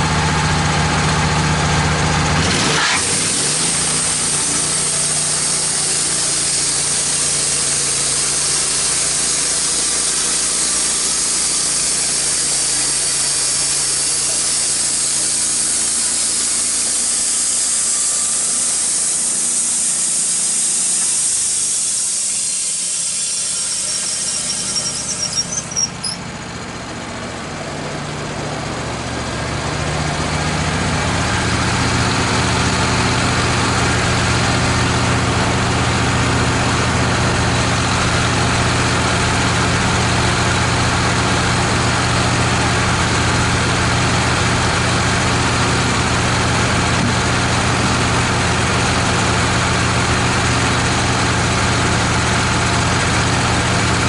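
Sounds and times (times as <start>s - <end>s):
engine running: 0.0s - 54.0s
high hiss: 3.4s - 26.2s
brief squeal: 21.9s - 26.3s.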